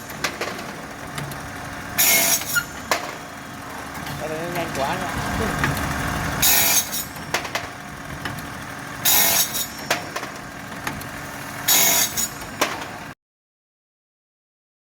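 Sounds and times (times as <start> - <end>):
cutting machine burst: 1.6 - 3.6, 6.4 - 7.8, 9.0 - 10.4, 11.5 - 13.2.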